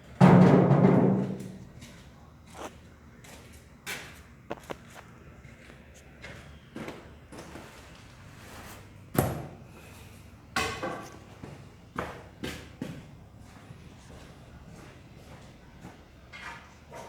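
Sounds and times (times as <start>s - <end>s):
knocks and bangs in a room: 0.2s - 1.8s.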